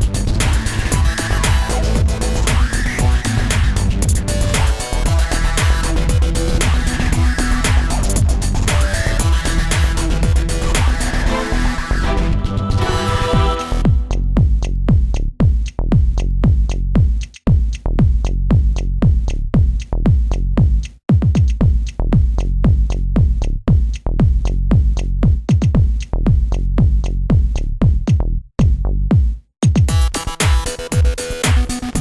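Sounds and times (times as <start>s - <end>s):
held synth notes: 0.0s - 14.2s
deep bass hits: 0.0s - 20.8s, 21.6s - 29.2s.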